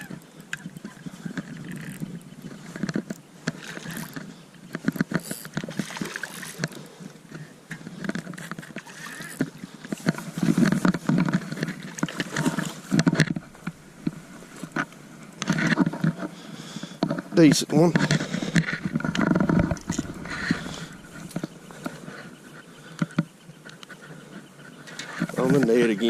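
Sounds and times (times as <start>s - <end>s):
fish splashing in water: 5.7s - 6.8s.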